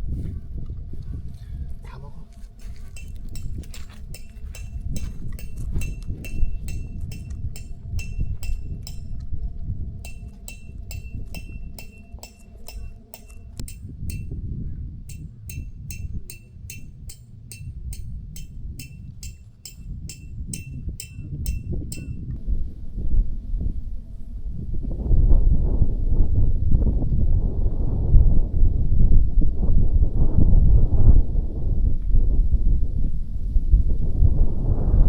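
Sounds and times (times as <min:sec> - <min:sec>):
low rumble: 0:00.0 - 0:27.8
small metallic clinks: 0:02.6 - 0:09.2, 0:10.1 - 0:14.4, 0:15.1 - 0:22.3.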